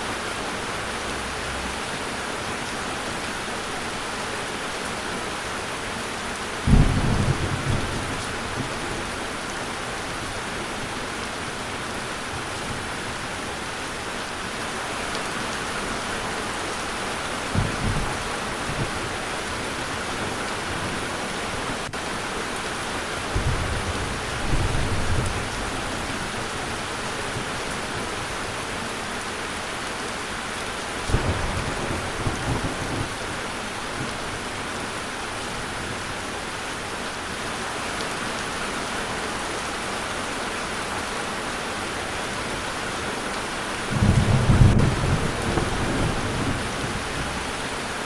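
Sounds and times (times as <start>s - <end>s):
rain pouring: 0.0s - 48.0s
thunder rumbling: 6.7s - 9.1s, 31.1s - 33.2s, 43.9s - 47.8s.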